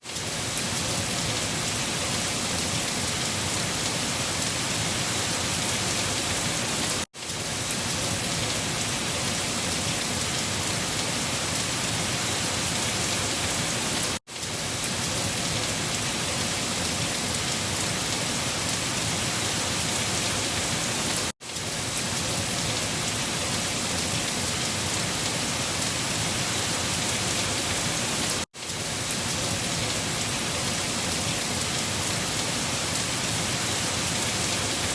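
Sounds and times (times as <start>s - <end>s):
steady rain falling: 0.0s - 34.9s.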